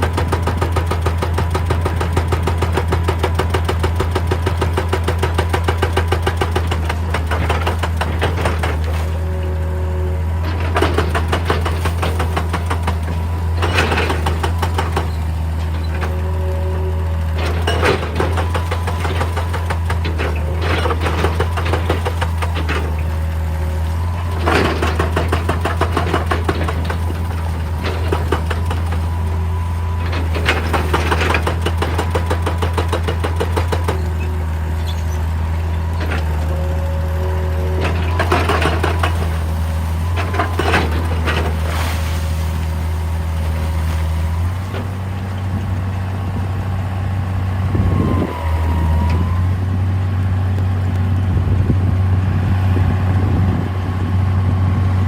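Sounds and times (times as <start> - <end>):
excavator diesel engine running: 0.0 - 55.0
hydraulic surges with whine: 33.9 - 54.2.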